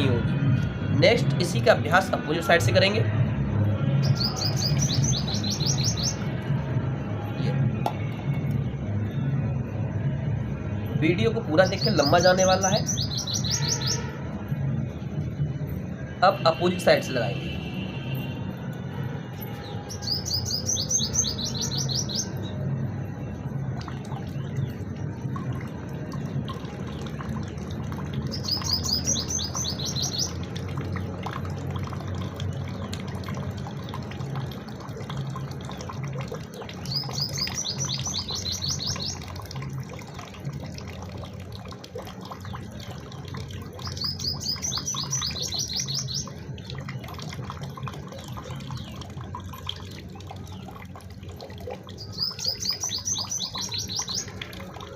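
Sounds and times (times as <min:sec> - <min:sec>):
bird trilling high notes: 0:11.7 - 0:14.2.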